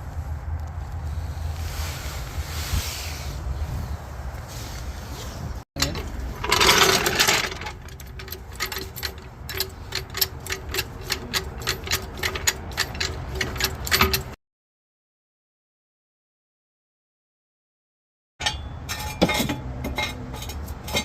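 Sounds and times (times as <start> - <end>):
car suspension squeaking: 5.8 - 14.4.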